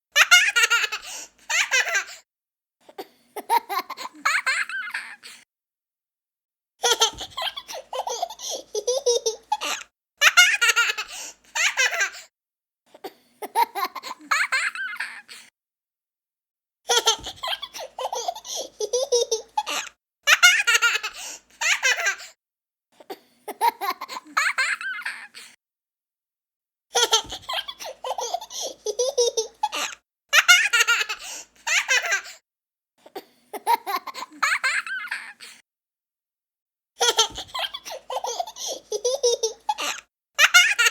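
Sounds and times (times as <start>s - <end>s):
young child laughing: 0.1s - 2.2s, 3.4s - 5.4s, 6.8s - 12.3s, 16.9s - 22.3s, 27.0s - 32.4s, 33.6s - 35.5s, 37.0s - 40.9s.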